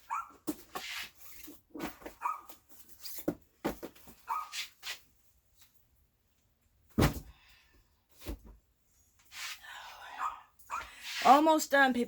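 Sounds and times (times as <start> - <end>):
dog barking: 0.0 - 0.4, 2.2 - 2.5, 4.3 - 4.5, 10.2 - 10.9.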